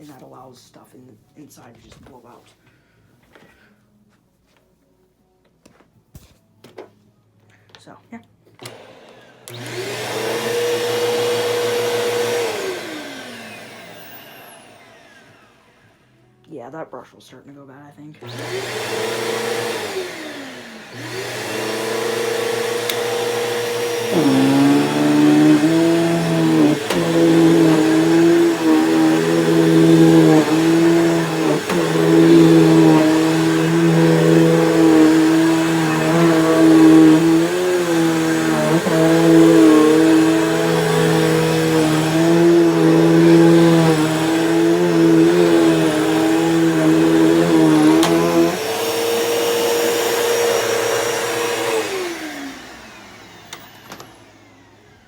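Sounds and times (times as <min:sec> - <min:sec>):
vacuum cleaner running: 0:08.6 - 0:16.2, 0:18.2 - 0:55.0.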